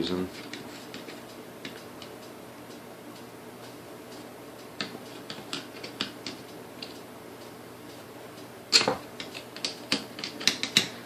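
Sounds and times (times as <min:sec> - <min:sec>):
steady low hum: 0:00.0 - 0:11.0
clicks and taps of hand tools: 0:08.8 - 0:11.0.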